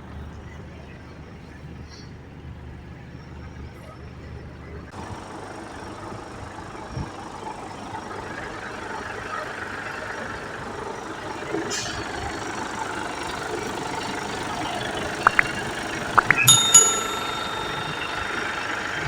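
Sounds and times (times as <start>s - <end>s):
diesel truck engine idling: 4.9s - 19.0s.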